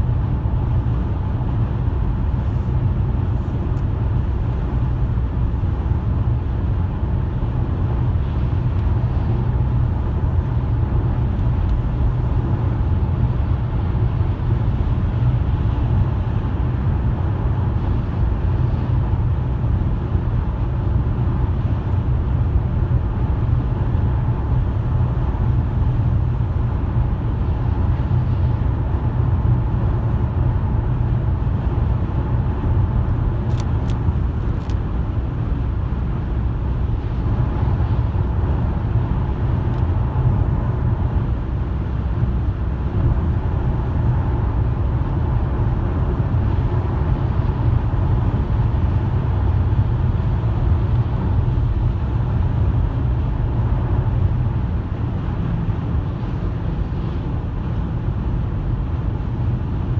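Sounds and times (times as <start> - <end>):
car driving rumble: 0.0 - 59.9.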